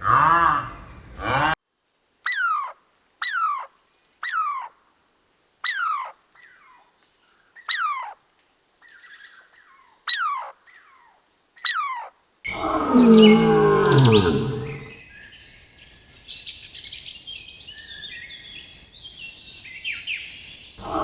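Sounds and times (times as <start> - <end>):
animal calls sliding down in pitch: 12.5 - 14.9.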